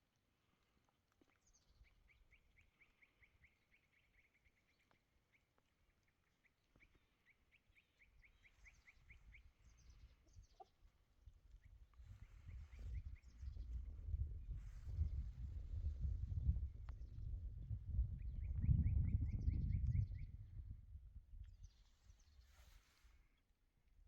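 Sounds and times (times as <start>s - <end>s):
faint bird chirps: 1.2s - 10.9s.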